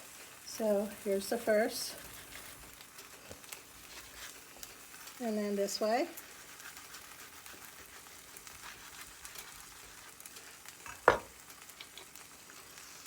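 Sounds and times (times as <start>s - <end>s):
food sizzling in a pan: 0.0s - 13.0s.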